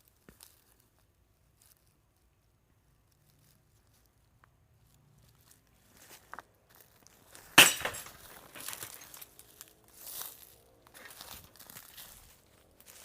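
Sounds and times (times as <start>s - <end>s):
footsteps through dry leaves: 5.2s - 13.0s.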